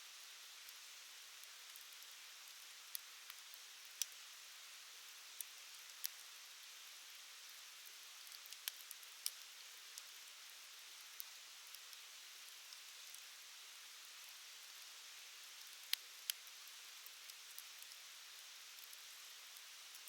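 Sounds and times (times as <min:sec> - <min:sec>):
wood fire crackling: 0:02.9 - 0:04.2, 0:07.8 - 0:10.2, 0:15.6 - 0:18.0, 0:18.6 - 0:20.0.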